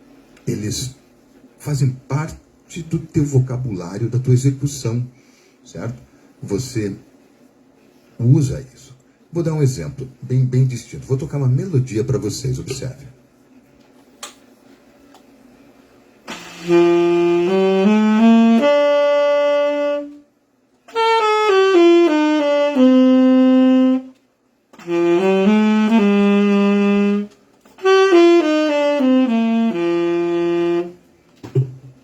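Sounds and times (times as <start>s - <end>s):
saxophone melody: 16.3s - 20.3s, 20.9s - 24.2s, 24.8s - 31.1s.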